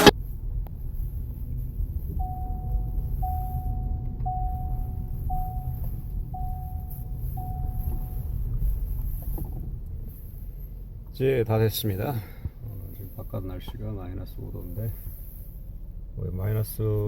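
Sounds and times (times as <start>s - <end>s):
low steady rumble: 0.0s - 17.0s
vehicle warning chime beeping: 2.2s - 8.9s.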